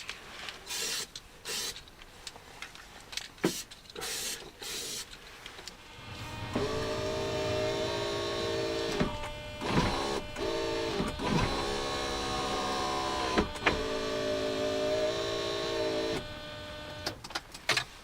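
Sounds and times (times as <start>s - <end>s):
electric window motor whining: 5.7s - 17.2s.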